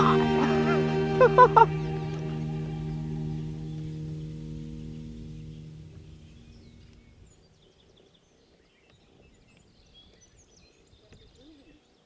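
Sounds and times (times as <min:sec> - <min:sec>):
song music: 0:00.0 - 0:07.3.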